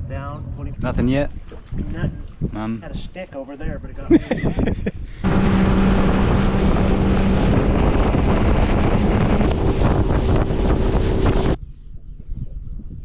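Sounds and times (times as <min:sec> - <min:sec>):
wind buffeting microphone: 0:00.1 - 0:13.0
boat motor humming: 0:05.2 - 0:11.6.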